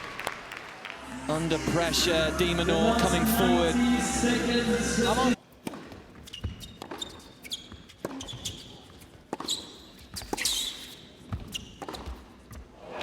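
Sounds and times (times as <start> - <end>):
shoes squeaking on court: 5.9 - 12.6.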